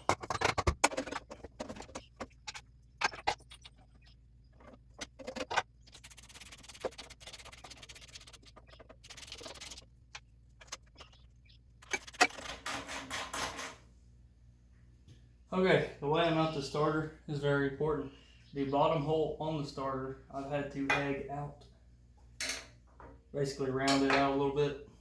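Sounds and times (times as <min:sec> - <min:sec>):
metal tools clinking: 0:22.4 - 0:22.8.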